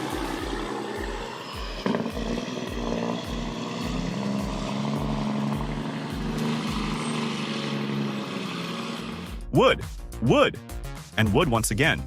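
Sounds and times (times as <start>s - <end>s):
music with deep beat: 0.0s - 8.1s, 9.0s - 12.0s
machine engine running: 0.0s - 9.4s.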